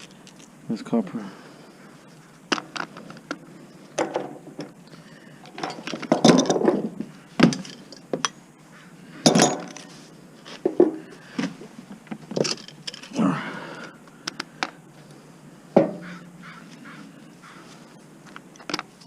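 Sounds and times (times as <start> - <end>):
metal parts and tools clanking: 5.4 - 8.4, 9.2 - 10.8, 12.3 - 13.2.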